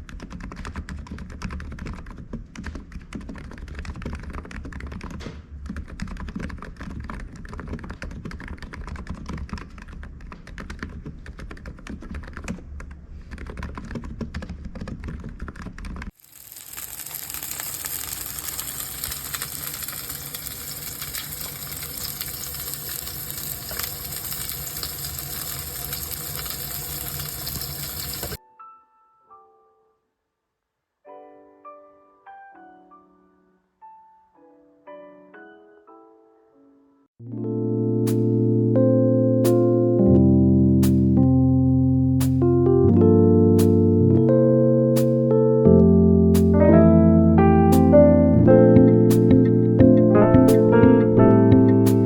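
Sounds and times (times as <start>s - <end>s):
soft piano notes: 37.2s - 52.0s.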